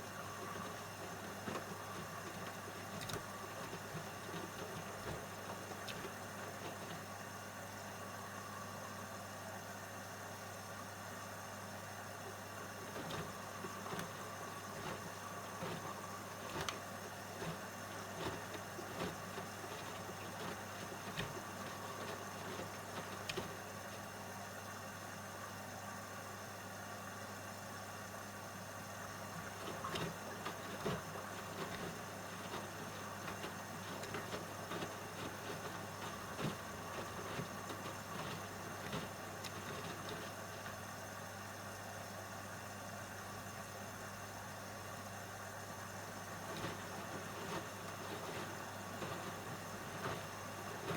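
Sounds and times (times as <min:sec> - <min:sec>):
laundry tumbling knocks: 0:00.0 - 0:07.1, 0:12.7 - 0:24.1, 0:29.3 - 0:40.9, 0:46.2 - 0:50.9
washing machine motor hum: 0:00.0 - 0:50.9.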